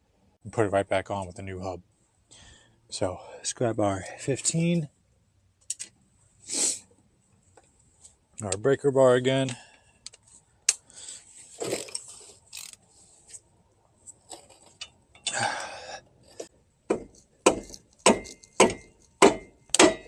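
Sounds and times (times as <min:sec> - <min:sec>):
sharp knocks on metal: 0:16.9 - 0:20.0.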